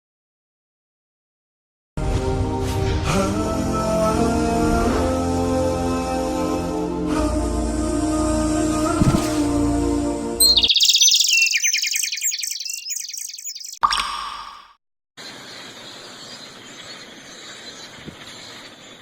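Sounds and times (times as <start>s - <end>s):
songbird trilling: 10.4s - 14.5s.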